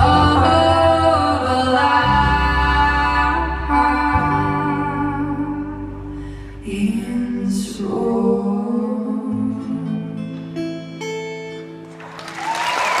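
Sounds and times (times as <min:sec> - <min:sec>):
guitar: 0:00.0 - 0:13.0
audience applause: 0:11.9 - 0:13.0.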